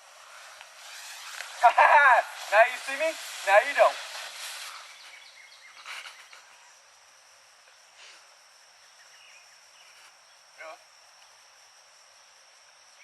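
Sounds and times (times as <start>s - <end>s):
hiss: 0.0s - 6.6s, 7.9s - 8.4s
insects chirping: 0.0s - 13.0s.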